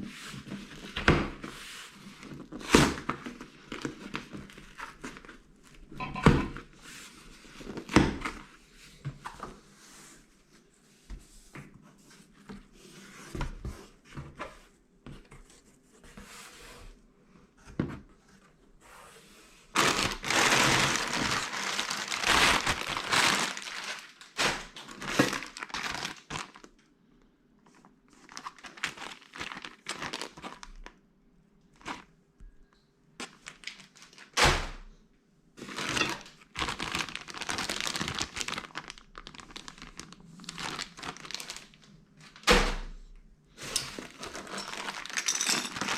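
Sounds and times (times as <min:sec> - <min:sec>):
wrapping crinkling and tearing: 0:19.7 - 0:26.8, 0:28.1 - 0:31.0, 0:33.2 - 0:34.4, 0:35.6 - 0:42.4, 0:43.7 - 0:45.9.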